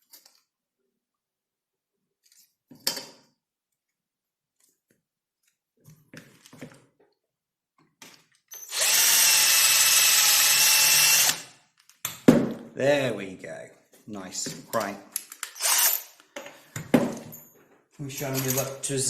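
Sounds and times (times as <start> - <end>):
electric drill running: 8.6 - 11.6, 15.6 - 16.1.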